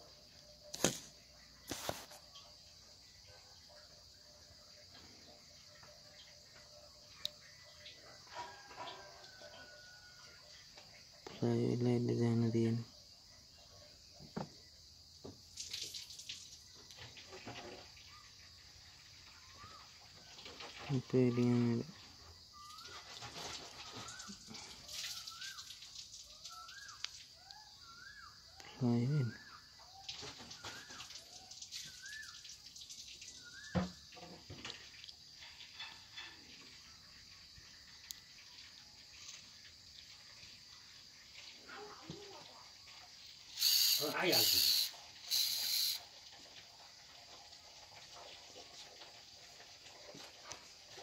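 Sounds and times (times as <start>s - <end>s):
small metal gears clicking: 43.6s - 46.0s.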